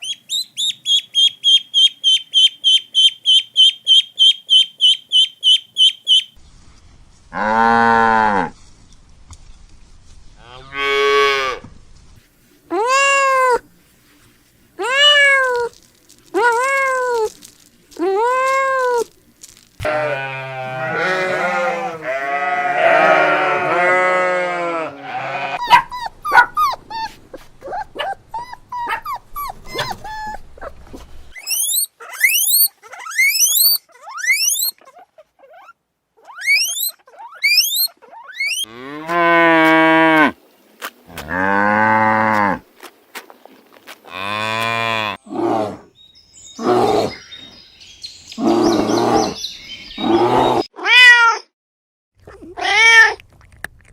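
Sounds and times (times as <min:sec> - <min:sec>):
quick rising high chirps: 0:31.3 - 0:34.7, 0:36.4 - 0:38.6
short animal calls and clicks: 0:31.3 - 0:38.7
long pitched animal calls: 0:31.4 - 0:34.8, 0:36.3 - 0:40.2.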